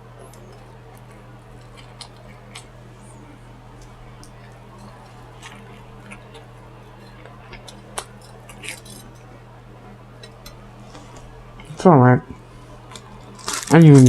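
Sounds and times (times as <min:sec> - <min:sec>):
steady low hum: 0:00.0 - 0:14.0
crunchy crackle of chewing: 0:00.2 - 0:09.4, 0:12.6 - 0:14.0.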